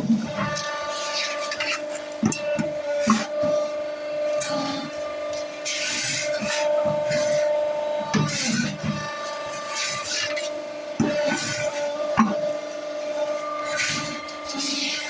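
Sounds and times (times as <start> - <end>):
gritty scraping: 4.4 - 12.5.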